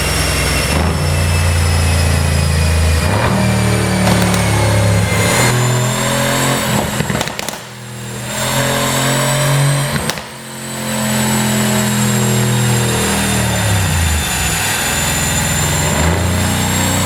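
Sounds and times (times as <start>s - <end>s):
car engine revving: 0.0s - 17.0s
exhaust pops and crackles: 4.0s - 6.0s, 6.7s - 8.0s, 9.9s - 10.5s.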